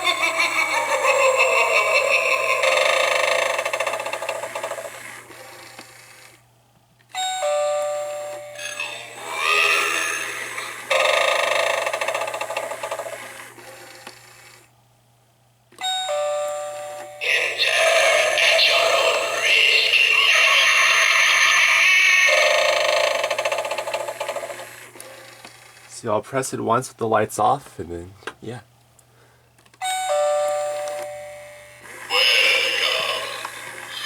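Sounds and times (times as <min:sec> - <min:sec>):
spooky sound effects: 0:00.0 - 0:04.8, 0:08.5 - 0:11.8, 0:17.2 - 0:23.3, 0:31.9 - 0:34.0
ding-dong doorbell chime: 0:07.2 - 0:08.8, 0:15.8 - 0:17.2, 0:29.8 - 0:31.5.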